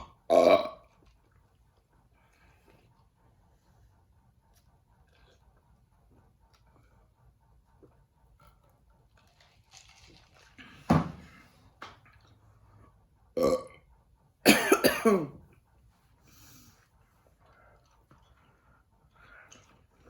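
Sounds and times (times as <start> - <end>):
person burping: 0.0 - 0.9, 13.4 - 13.8, 14.5 - 15.4.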